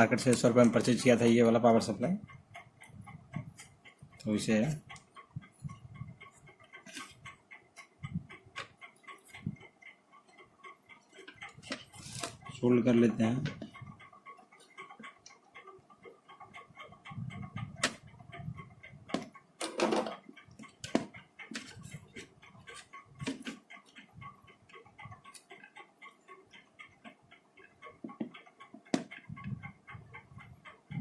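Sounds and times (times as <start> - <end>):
rapid faint ticking: 0.0 - 31.0
tools clicking on circuit board: 17.3 - 18.5, 19.1 - 31.0.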